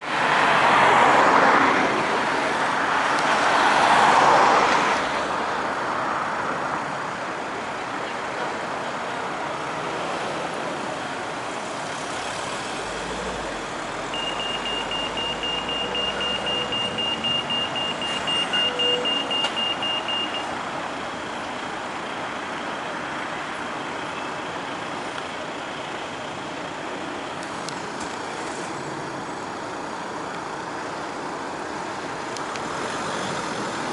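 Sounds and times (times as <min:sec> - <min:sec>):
road traffic: 0:00.0 - 0:33.9
vehicles passing close by: 0:00.0 - 0:33.9
rapid high-pitched crossing beeps: 0:14.1 - 0:20.6.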